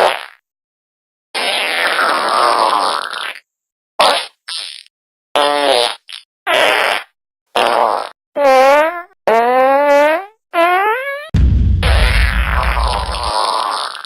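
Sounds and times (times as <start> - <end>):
fart sounds: 0.0 - 0.4, 1.4 - 3.4, 4.0 - 11.3.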